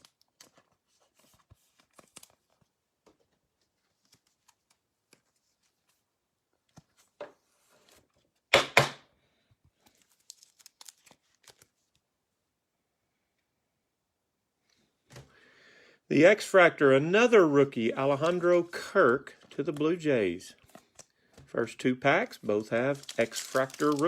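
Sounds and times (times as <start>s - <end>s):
cards rustling and clicking: 0.0s - 6.0s, 9.7s - 12.0s, 18.0s - 24.0s
card pack ripping open: 9.9s - 11.7s, 22.4s - 24.0s.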